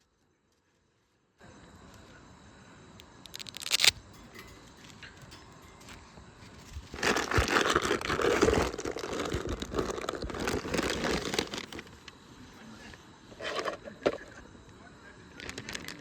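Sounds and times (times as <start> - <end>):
plastic wrapper crinkling: 3.2 - 6.0, 6.6 - 12.1, 15.4 - 16.0.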